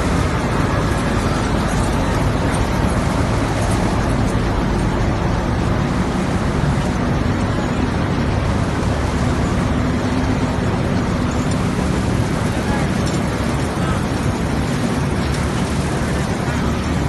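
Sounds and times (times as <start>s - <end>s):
machinery running: 0.0s - 17.0s.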